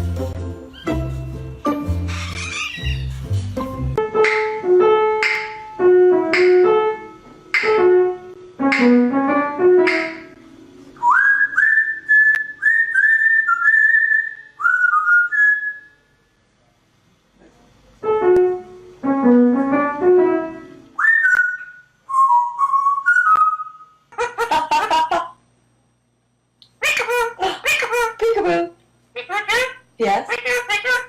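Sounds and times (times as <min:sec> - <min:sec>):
piano-like notes: 0:00.0 - 0:11.0, 0:18.0 - 0:21.0
parrot whistling a tune: 0:00.7 - 0:01.0, 0:02.1 - 0:03.1, 0:11.0 - 0:16.0, 0:21.0 - 0:24.0.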